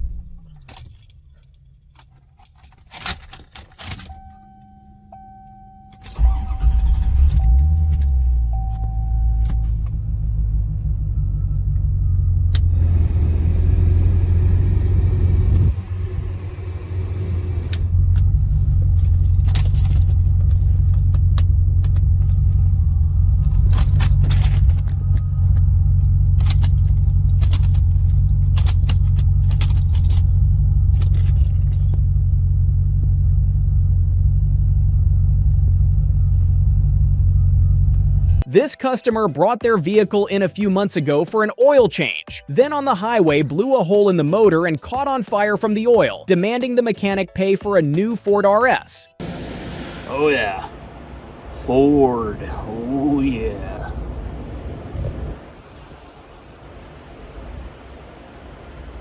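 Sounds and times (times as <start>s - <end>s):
car engine starting and running: 0.0s - 38.5s, 49.2s - 59.0s
dashboard warning chime: 4.1s - 10.1s
keys rattling: 26.4s - 31.9s.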